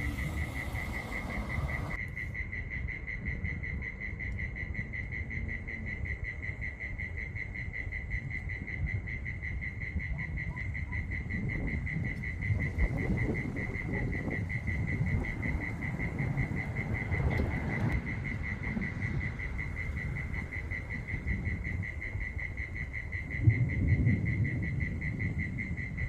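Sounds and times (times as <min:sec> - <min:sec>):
low rumbling noise: 0:00.0 - 0:02.0, 0:11.1 - 0:26.0
insect chirping trill: 0:00.0 - 0:26.0.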